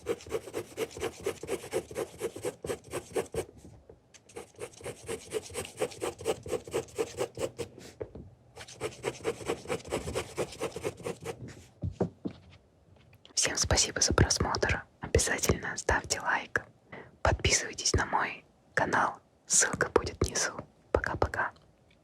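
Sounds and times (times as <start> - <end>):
fast rubbing strokes on surface: 0.0 - 3.5, 4.3 - 7.7, 8.6 - 11.4.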